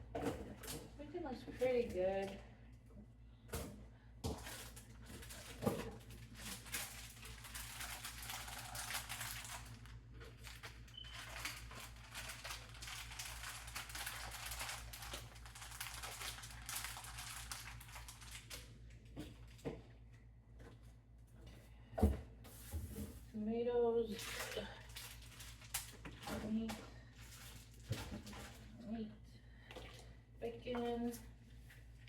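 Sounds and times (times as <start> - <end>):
low steady hum: 0.0 - 32.0
plastic packaging crinkling: 4.4 - 19.6, 24.2 - 26.4, 27.2 - 28.5.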